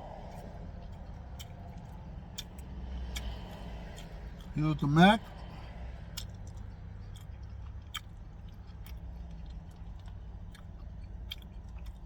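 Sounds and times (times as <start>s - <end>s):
person chewing food: 0.3s - 4.5s, 6.1s - 12.0s.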